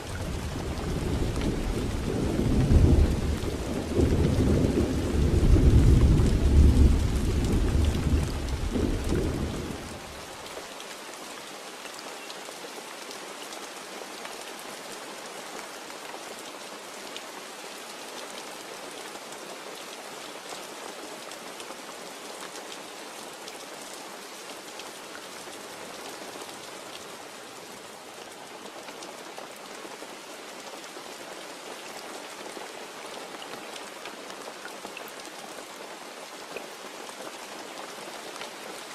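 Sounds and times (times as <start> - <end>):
heavy rain pattering: 0.0 - 13.2
thunder rumbling: 0.3 - 10.1.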